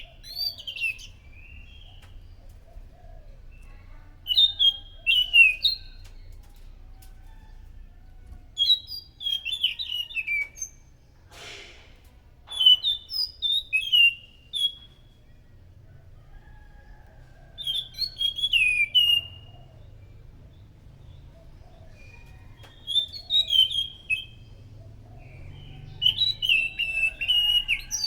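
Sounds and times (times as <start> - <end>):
brief hiss: 11.3 - 12.0
thrush singing whistled notes: 12.5 - 15.0, 17.6 - 19.6, 22.0 - 24.5, 25.2 - 28.0.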